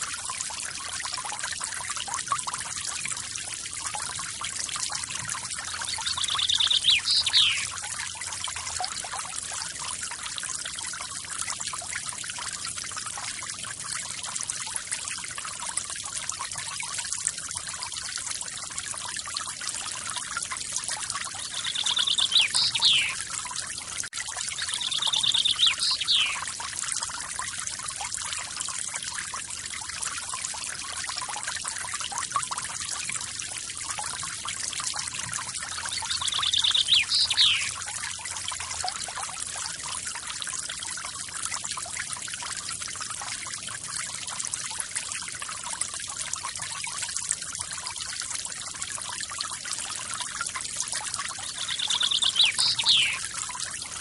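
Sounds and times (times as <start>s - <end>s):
bird trilling call: 5.9s - 7.7s, 21.5s - 23.2s, 24.6s - 26.4s, 35.9s - 37.8s, 51.6s - 53.2s.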